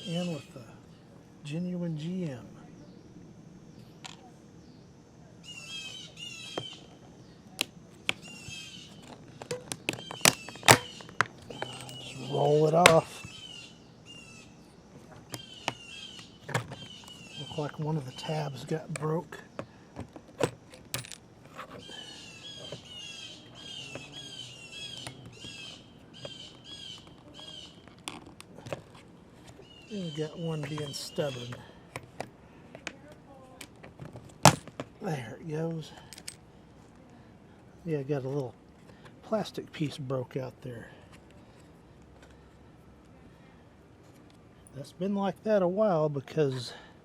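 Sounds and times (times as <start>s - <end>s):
bird chirping: 0.0s - 20.3s, 21.6s - 28.0s, 29.4s - 31.8s
plastic clips snapping loose: 9.4s - 11.8s.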